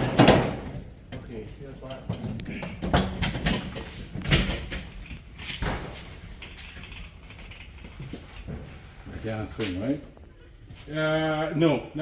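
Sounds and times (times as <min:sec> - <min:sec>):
sharp knocks and clatters: 0:00.0 - 0:08.8.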